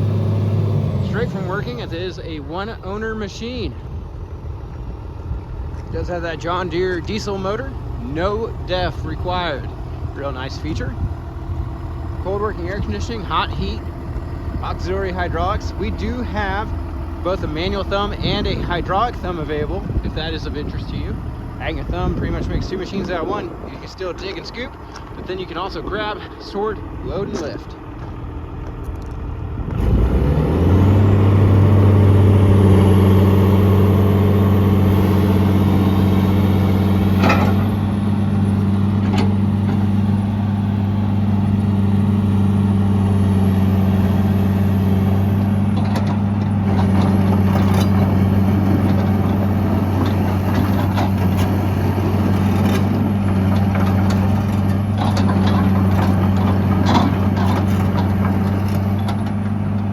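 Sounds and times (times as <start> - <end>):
excavator diesel engine revving: 0.0 - 59.9
knocks and clatter: 45.8 - 59.9.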